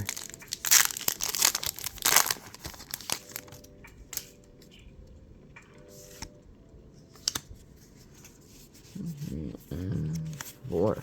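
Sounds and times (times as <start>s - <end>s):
foil wrapper crinkling: 0.0s - 4.3s
cards clicking and sliding: 7.1s - 7.5s.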